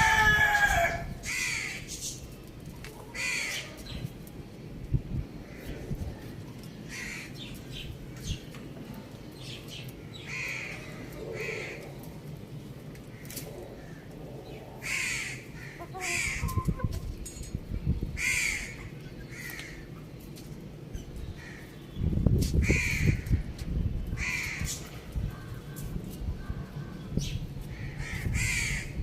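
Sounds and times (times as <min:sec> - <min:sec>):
crows cawing: 0:00.0 - 0:01.9, 0:03.2 - 0:03.6, 0:06.9 - 0:07.4, 0:10.2 - 0:11.8, 0:14.8 - 0:16.7, 0:18.2 - 0:19.9, 0:22.6 - 0:23.2, 0:24.2 - 0:25.7, 0:27.7 - 0:29.0.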